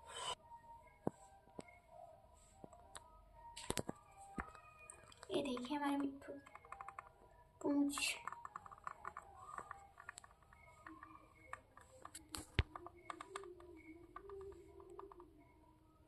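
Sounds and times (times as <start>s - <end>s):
parrot beak clicking: 6.3s - 7.1s.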